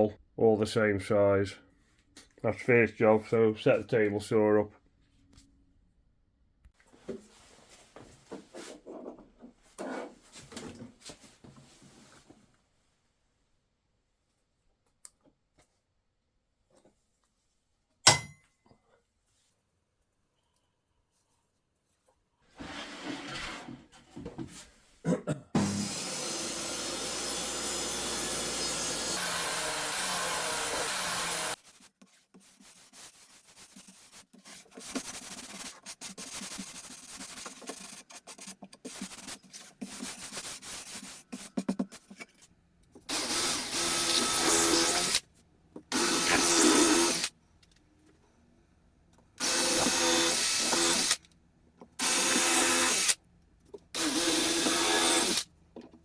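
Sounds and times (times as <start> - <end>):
drill motor bursts: 25.6 - 31.6, 43.1 - 45.2, 45.9 - 47.3, 49.4 - 51.2, 52.0 - 53.2, 54.0 - 55.4
power tool running: 25.6 - 31.6, 43.1 - 45.2, 45.9 - 47.3, 49.4 - 51.2, 54.0 - 55.4.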